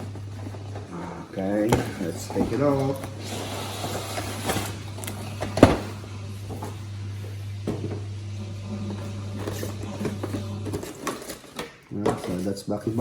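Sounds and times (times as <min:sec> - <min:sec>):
packaging clicks and rustles: 0:00.0 - 0:08.1, 0:08.8 - 0:13.0
steady low hum: 0:00.0 - 0:13.0.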